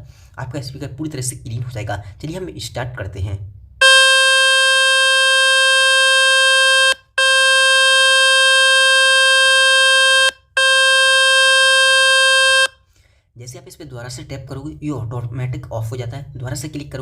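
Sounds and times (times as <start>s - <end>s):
buzzy speaker tone: 3.8s - 12.7s.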